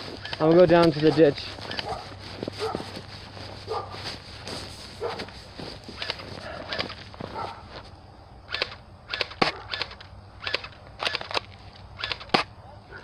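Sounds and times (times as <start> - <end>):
footsteps crunching through dry leaves: 0.0 - 8.0.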